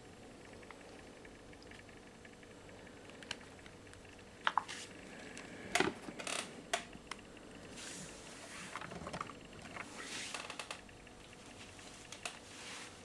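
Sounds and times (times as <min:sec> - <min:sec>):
rubbing and rustling: 0:07.7 - 0:10.7, 0:11.3 - 0:13.0.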